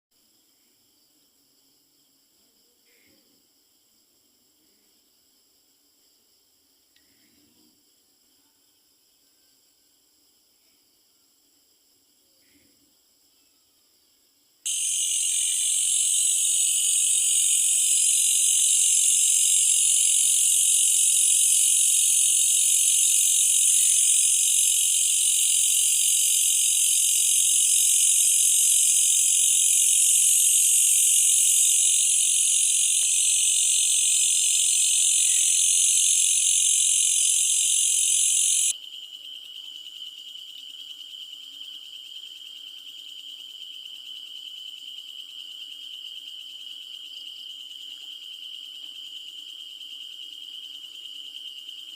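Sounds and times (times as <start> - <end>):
thin high trill: 14.7 - 38.7
bush cricket buzzing: 14.7 - 39.0.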